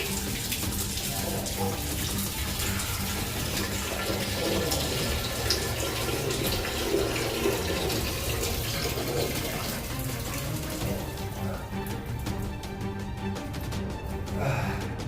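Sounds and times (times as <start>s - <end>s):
urine splashing into toilet water: 0.0s - 13.3s.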